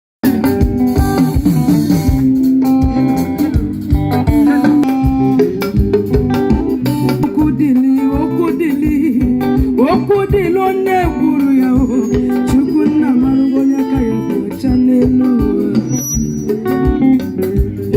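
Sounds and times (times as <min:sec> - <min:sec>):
band playing: 0:00.2 - 0:17.9
person singing: 0:03.1 - 0:17.9.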